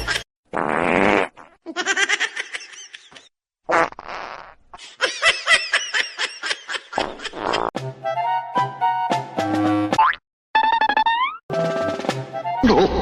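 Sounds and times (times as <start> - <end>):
person laughing in rapid bursts: 1.7 - 3.3, 4.8 - 7.7.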